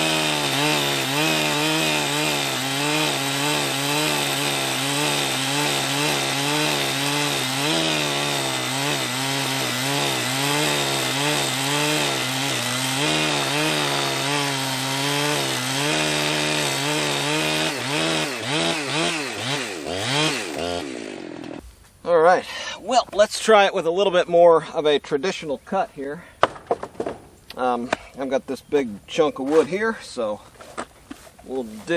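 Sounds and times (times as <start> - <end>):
chainsaw cutting wood: 0.0 - 21.6, 26.4 - 27.5.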